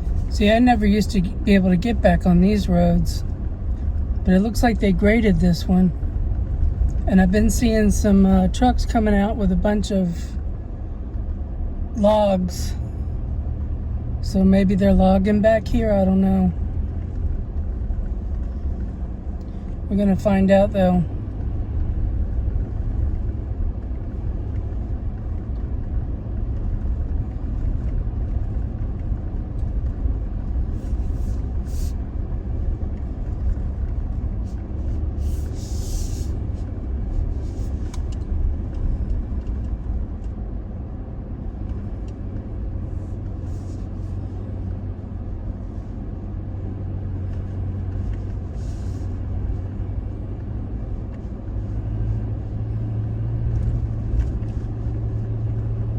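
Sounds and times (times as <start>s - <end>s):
engine and tyres rumbling: 0.0s - 55.9s
short hissy bursts: 35.1s - 36.6s.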